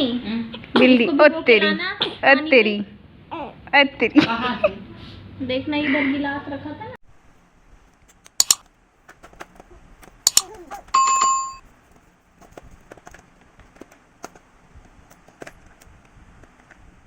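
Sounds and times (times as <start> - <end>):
sharp clicks: 8.1 - 8.7, 10.3 - 10.6
bell-like ding: 11.0 - 11.6.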